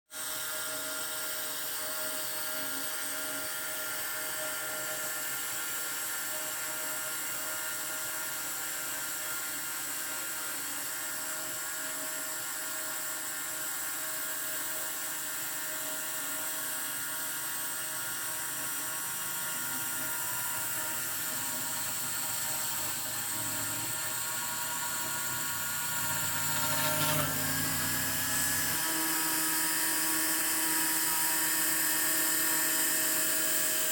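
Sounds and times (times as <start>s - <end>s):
spindle motor whining: 16.1s - 33.9s.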